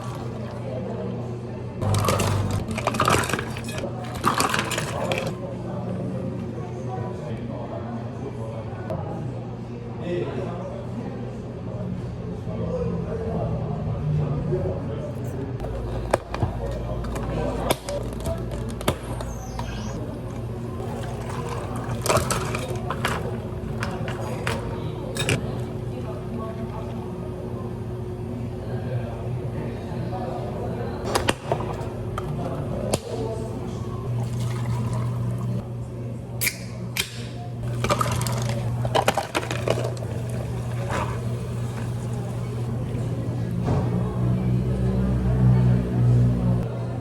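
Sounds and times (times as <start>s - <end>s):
liquid pouring: 0.0s - 0.6s, 1.8s - 5.4s, 15.6s - 27.0s, 34.1s - 35.6s, 37.6s - 42.7s
low machine hum: 0.0s - 47.0s.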